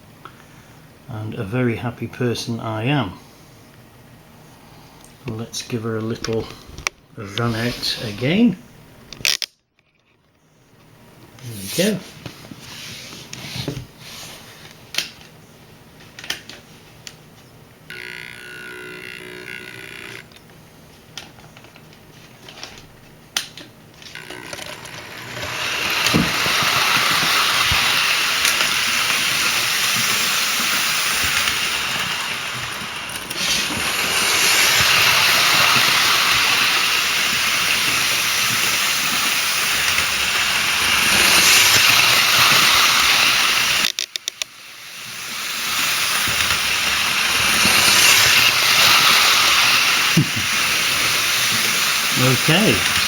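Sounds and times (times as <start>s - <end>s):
model train wheels and motor rattling: 5.3s - 8.5s, 17.9s - 20.6s, 21.2s - 53.0s.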